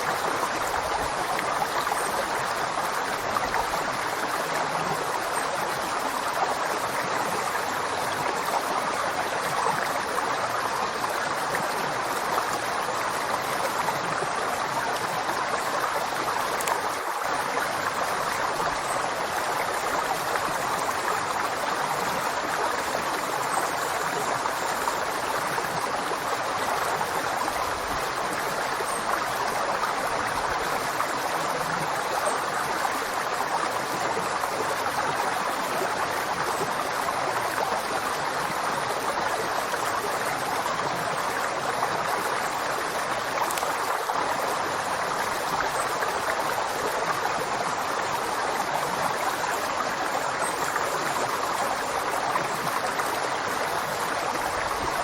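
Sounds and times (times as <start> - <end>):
river flowing: 0.0 - 55.0.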